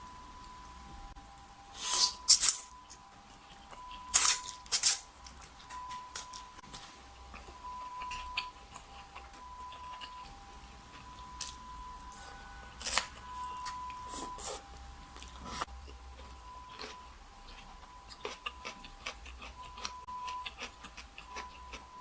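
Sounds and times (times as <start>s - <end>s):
chewing and biting: 1.8s - 10.3s, 12.8s - 14.6s, 15.2s - 21.9s
sharp clicks and small crunches: 2.3s - 10.2s.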